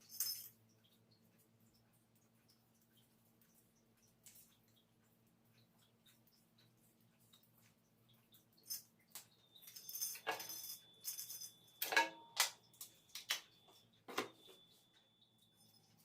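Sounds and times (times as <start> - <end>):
tools clicking and rattling: 8.6 - 13.5.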